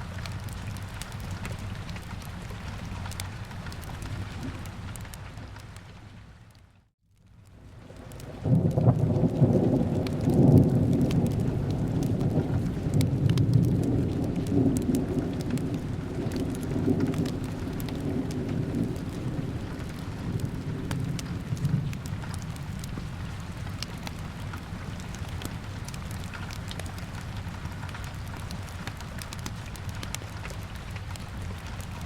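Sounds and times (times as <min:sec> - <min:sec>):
rain falling: 0:00.0 - 0:32.0
thunder rolling: 0:07.9 - 0:23.6.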